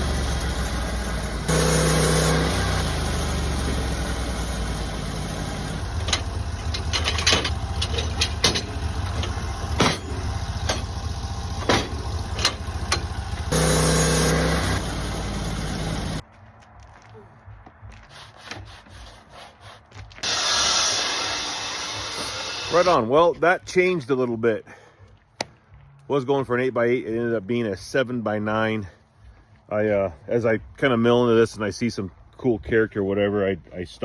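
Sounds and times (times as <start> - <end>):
sawmill engine running: 0.0 - 16.2, 20.2 - 23.1
sharp knocks and clicks: 6.0 - 11.0, 11.6 - 13.5.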